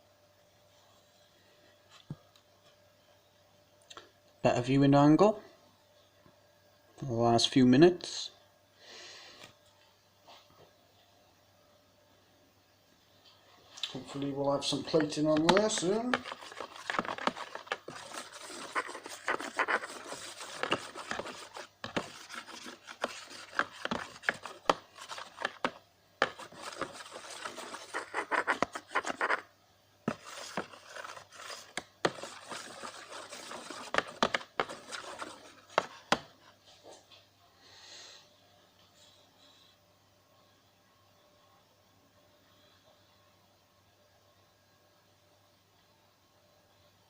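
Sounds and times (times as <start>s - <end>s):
faint steady hum: 0.0s - 47.0s
rubbing and scraping: 14.8s - 29.5s, 30.1s - 36.4s.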